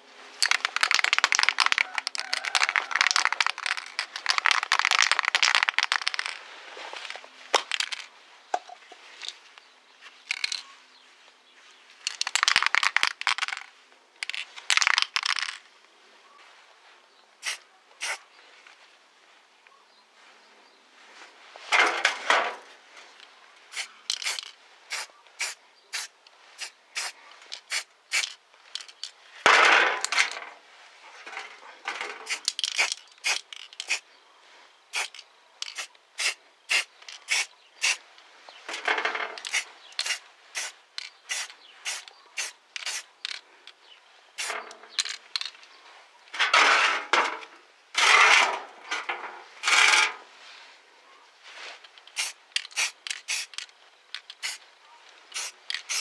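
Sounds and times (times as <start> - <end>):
scraping strokes: 17.4 - 18.2, 35.0 - 38.0, 38.6 - 43.1, 55.3 - 56.0.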